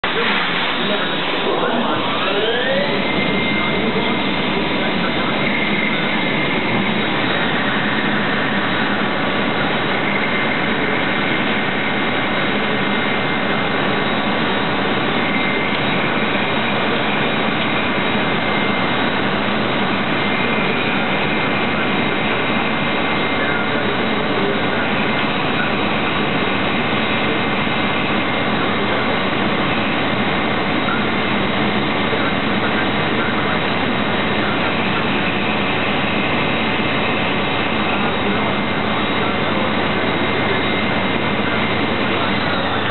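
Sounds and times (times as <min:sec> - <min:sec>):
lathe running: 0:00.0 - 0:42.9.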